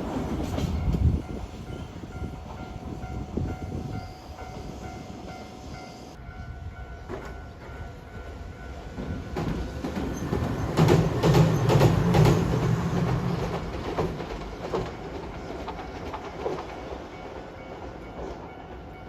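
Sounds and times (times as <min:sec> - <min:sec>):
train passing: 0:00.0 - 0:19.0
wheels clicking over rail joints: 0:08.9 - 0:19.0.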